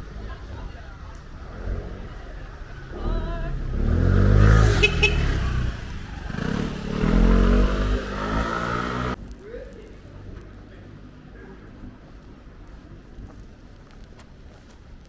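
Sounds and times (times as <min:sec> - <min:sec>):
vehicle engine passing by: 0:01.4 - 0:09.2.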